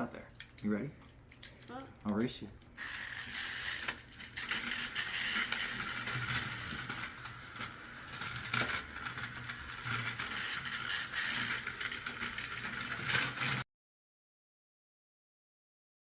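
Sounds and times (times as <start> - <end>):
ratcheting clatter: 2.2 - 13.6
toy car motors whirring: 2.6 - 13.6.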